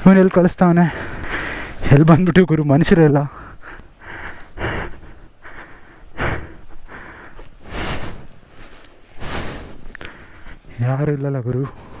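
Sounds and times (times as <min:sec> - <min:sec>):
man breathing hard: 0:00.9 - 0:01.9, 0:03.3 - 0:10.8.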